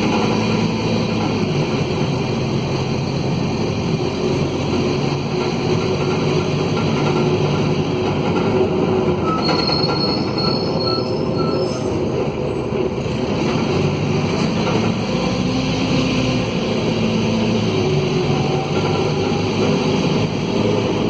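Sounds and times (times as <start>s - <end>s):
diesel bus engine through broken exhaust: 0.0s - 21.0s
high-pitched squeal: 9.2s - 12.0s.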